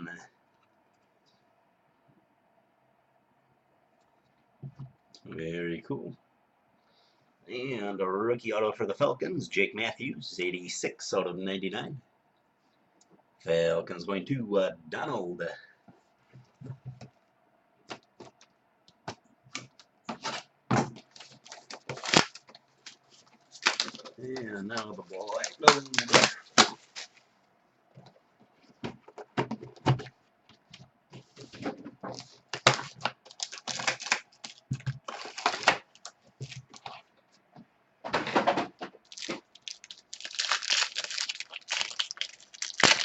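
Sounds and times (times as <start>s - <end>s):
card packs crinkling and rustling: 19.5s - 27.3s, 31.2s - 37.1s, 38.8s - 43.0s.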